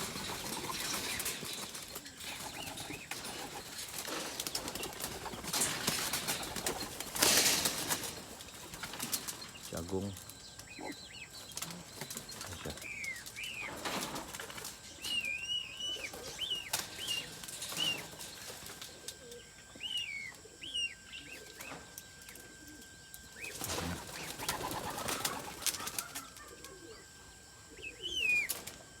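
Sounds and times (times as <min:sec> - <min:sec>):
wings flapping: 0:00.0 - 0:10.3, 0:11.5 - 0:15.1, 0:16.0 - 0:19.4, 0:23.4 - 0:26.8
birds chirping: 0:00.0 - 0:29.0.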